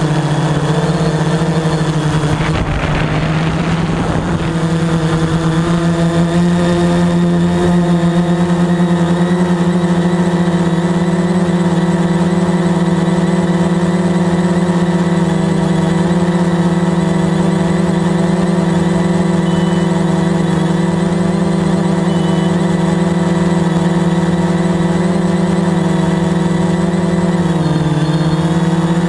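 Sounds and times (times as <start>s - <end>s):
drone propellers humming: 0.0s - 29.0s.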